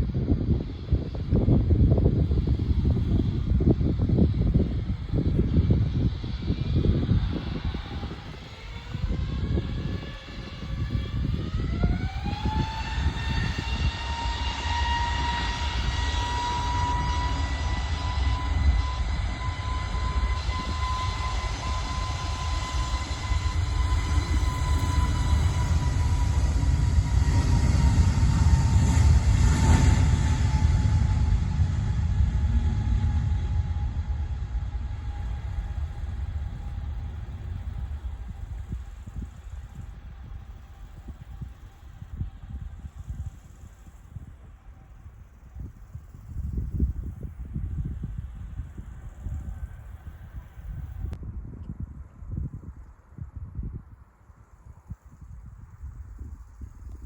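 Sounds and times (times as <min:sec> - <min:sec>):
jet engines spooling up: 0:00.0 - 0:51.2
wind on microphone: 0:00.0 - 0:57.0.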